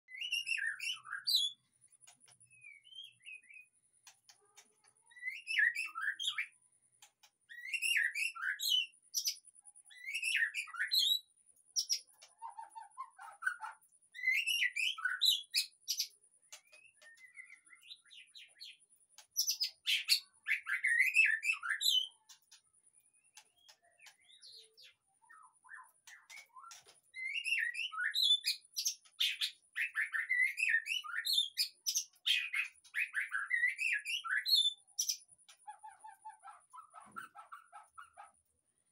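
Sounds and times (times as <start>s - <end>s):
bird singing whistled phrases: 0.1s - 1.6s, 5.1s - 6.6s, 7.5s - 8.9s, 9.9s - 12.0s, 13.3s - 18.5s, 19.5s - 22.2s, 24.3s - 35.2s.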